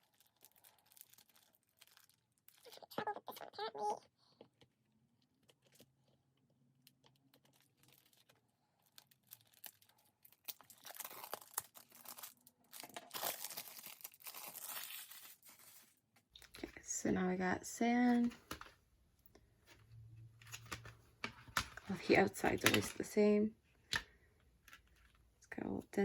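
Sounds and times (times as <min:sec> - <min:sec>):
plastic wrap crinkling and tearing: 0:00.0 - 0:03.9, 0:06.8 - 0:16.6.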